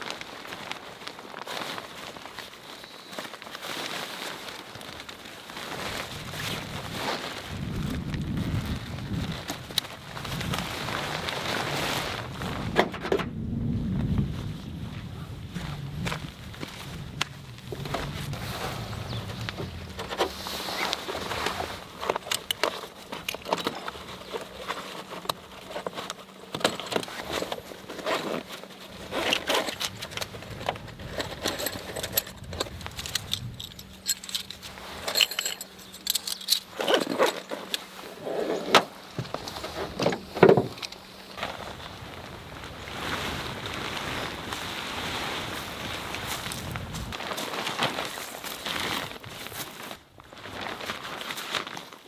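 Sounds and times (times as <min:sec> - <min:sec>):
objects clinking and knocking: 0:29.3 - 0:37.9.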